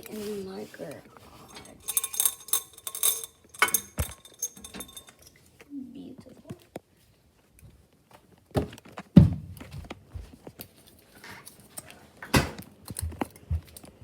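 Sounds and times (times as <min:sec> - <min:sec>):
light clattering: 0:01.3 - 0:05.4.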